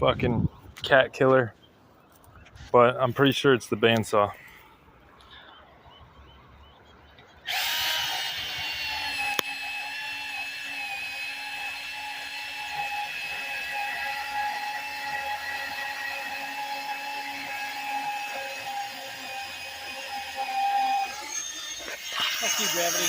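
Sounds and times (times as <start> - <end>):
band saw cutting metal: 7.4 - 23.0.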